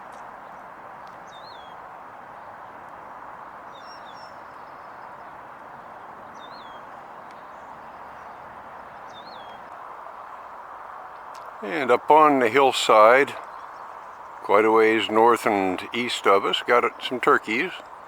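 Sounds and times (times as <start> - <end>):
outdoor background noise: 0.0 - 18.0
small bird calling: 11.4 - 18.0.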